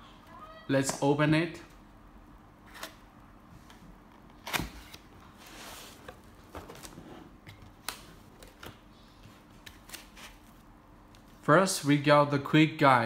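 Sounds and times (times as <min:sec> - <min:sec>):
soft sliding rustle: 0:05.3 - 0:06.2.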